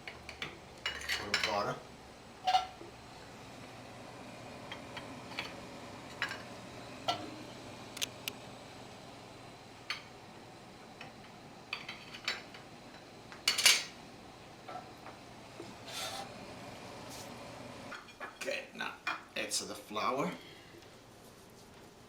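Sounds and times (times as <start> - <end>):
kitchenware clatter: 0.1 - 1.7, 13.5 - 14.0.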